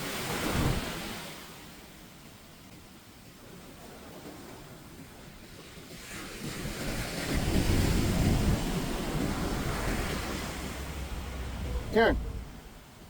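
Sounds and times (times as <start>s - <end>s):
ocean wave breaking: 3.4s - 13.0s.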